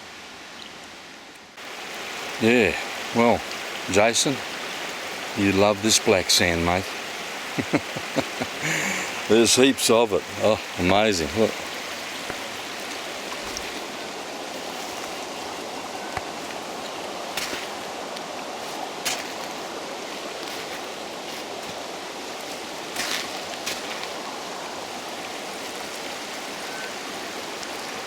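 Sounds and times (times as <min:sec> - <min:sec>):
river rushing: 0:00.0 - 0:28.0.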